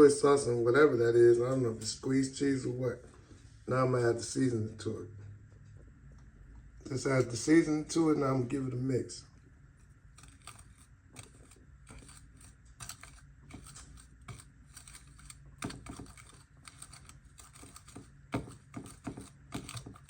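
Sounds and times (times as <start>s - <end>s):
utensil scraping a plate: 10.1s - 20.0s.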